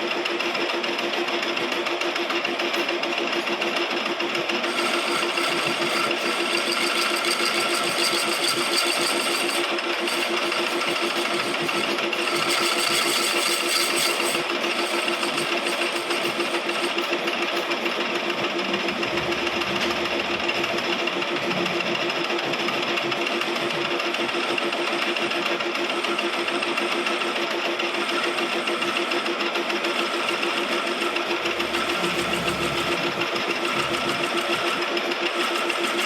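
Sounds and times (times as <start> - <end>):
lathe pulsing hum: 0.0 - 36.0
lathe tool cutting whine: 0.3 - 36.0.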